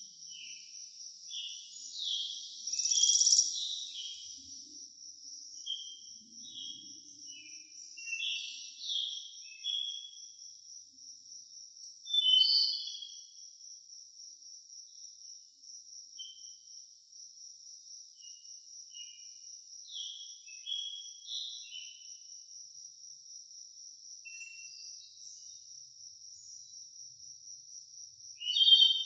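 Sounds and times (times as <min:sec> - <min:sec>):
high-pitched insect trill: 0:00.0 - 0:29.0
bird chirps: 0:00.3 - 0:04.8, 0:05.5 - 0:10.3, 0:12.1 - 0:13.2, 0:19.9 - 0:22.1, 0:24.2 - 0:25.6, 0:28.4 - 0:29.0.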